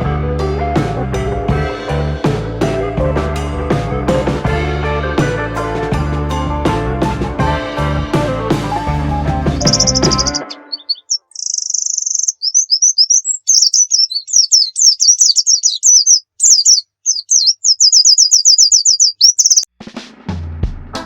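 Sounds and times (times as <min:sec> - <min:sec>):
songbird chirping and trilling: 0:09.6 - 0:19.7.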